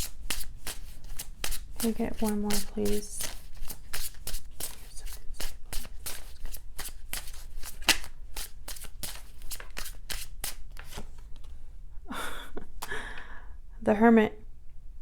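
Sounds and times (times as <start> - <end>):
cards being shuffled by hand: 0.0 - 11.6.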